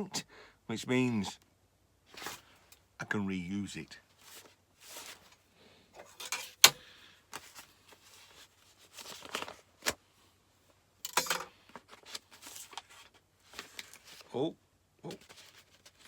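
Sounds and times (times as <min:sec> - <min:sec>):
paper rustling and crinkling: 0:04.1 - 0:06.6, 0:07.3 - 0:10.0, 0:11.6 - 0:14.3, 0:15.0 - 0:16.0.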